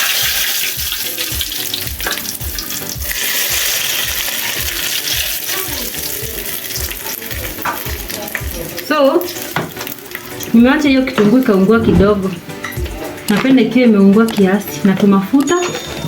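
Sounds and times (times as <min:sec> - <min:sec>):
onions sizzling in hot oil: 0:00.0 - 0:10.5.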